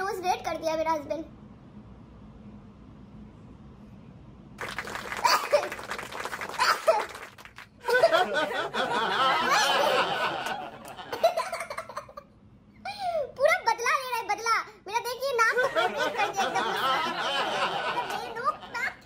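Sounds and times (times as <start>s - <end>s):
person laughing: 5.2s - 5.8s, 7.8s - 12.2s.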